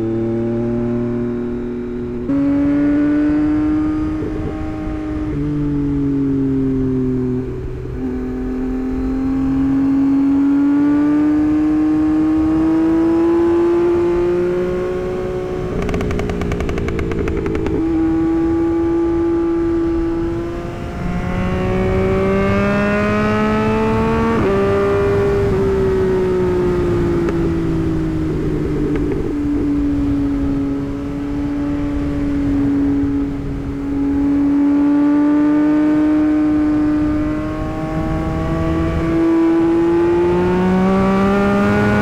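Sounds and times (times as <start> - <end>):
motorcycle engine accelerating: 0.0 - 42.0
exhaust stuttering crackle: 14.4 - 32.6.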